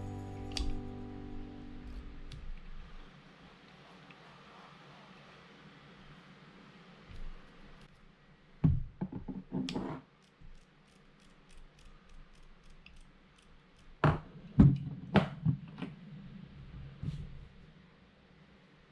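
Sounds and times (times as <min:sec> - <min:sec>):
fishing reel light ticks: 0:10.2 - 0:14.0.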